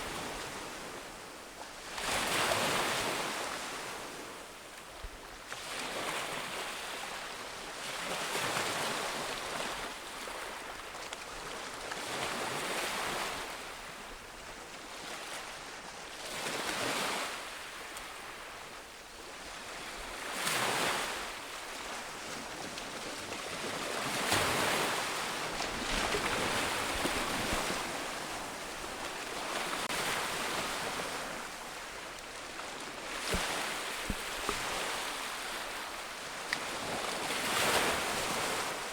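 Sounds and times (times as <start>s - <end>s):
wind: 0.0s - 38.9s
ocean waves breaking on beach: 16.3s - 38.9s.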